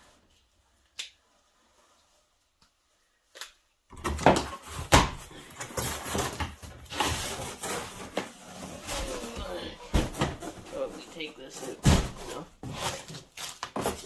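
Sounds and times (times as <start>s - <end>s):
cardboard rustling and scraping: 4.4s - 14.0s.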